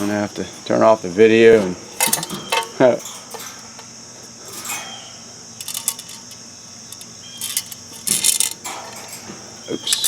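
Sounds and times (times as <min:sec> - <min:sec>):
faint steady hum: 0:00.0 - 0:10.0
small parts clicking and clinking: 0:02.0 - 0:05.0, 0:05.6 - 0:10.0.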